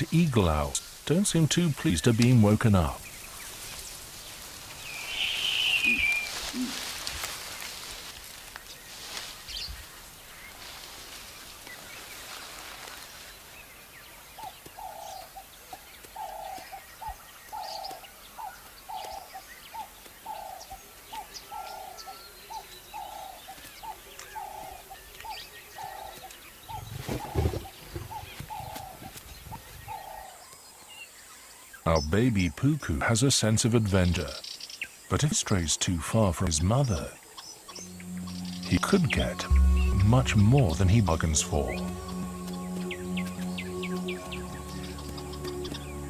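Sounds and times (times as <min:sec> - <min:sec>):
soft hiss: 0:00.0 - 0:14.1
heavy low thud: 0:37.8 - 0:44.0.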